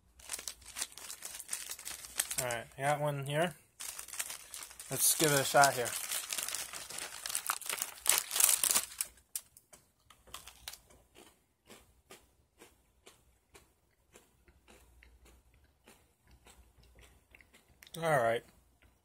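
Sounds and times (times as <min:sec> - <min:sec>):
plastic wrapper crinkling: 0:00.0 - 0:02.6, 0:03.8 - 0:10.8
cookie being chewed: 0:03.8 - 0:19.0.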